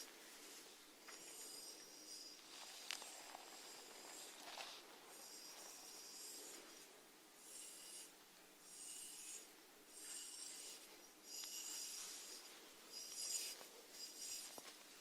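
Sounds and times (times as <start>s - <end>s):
snails rasping: 1.2s - 8.1s, 8.7s - 14.8s.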